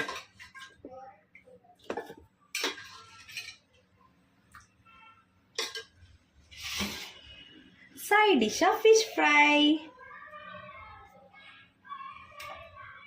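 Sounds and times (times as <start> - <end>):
metal spoon clinking on plates: 1.9 - 3.7, 5.6 - 6.0.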